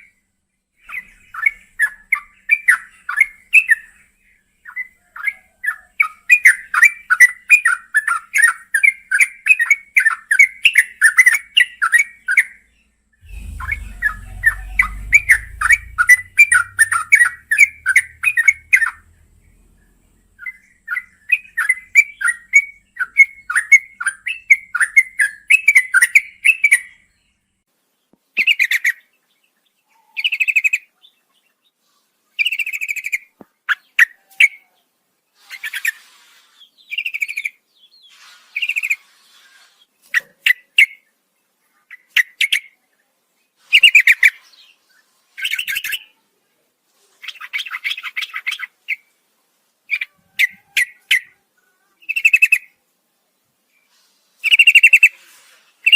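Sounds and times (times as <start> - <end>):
low rumble: 13.2 - 23.0.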